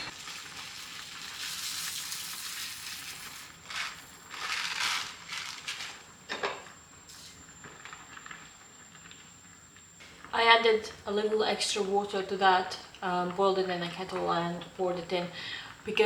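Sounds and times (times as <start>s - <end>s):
water sizzling on hot stove: 0.0s - 6.3s
pot boiling over: 0.0s - 16.0s.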